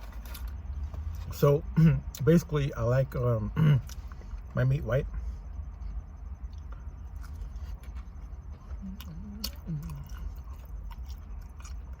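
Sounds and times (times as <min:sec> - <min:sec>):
person chewing: 0:00.0 - 0:01.3, 0:03.8 - 0:04.4, 0:06.3 - 0:12.0.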